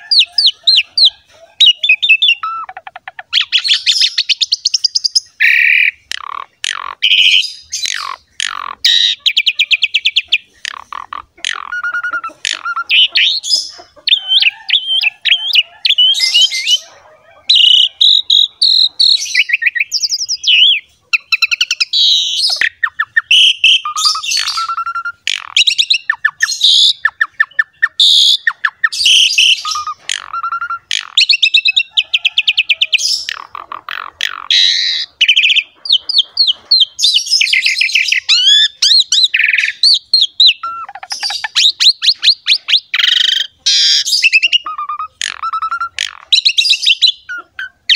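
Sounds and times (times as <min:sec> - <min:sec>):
starling singing: 0:00.0 - 0:47.9.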